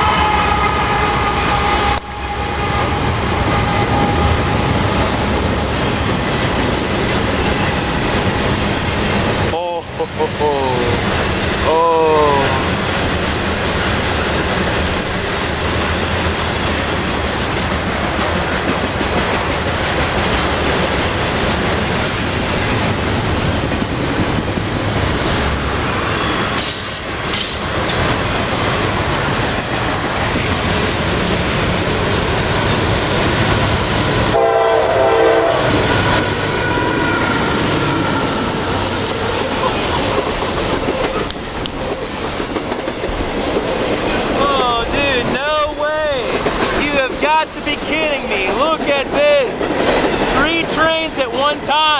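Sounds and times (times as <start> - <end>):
locomotive horn: 0.0 - 5.3, 34.3 - 37.5
freight train rumbling: 0.0 - 51.9.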